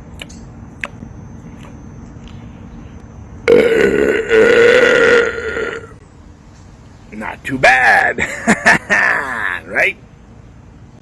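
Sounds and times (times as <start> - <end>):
man belching: 3.5 - 6.0, 8.9 - 9.7.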